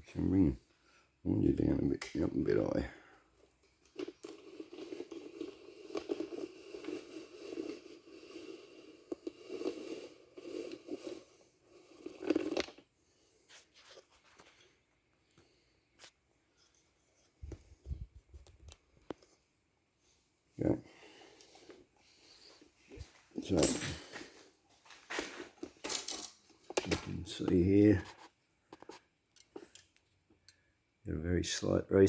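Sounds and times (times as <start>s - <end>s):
camera handling rubbing and scraping: 12.0s - 14.8s, 25.1s - 29.8s.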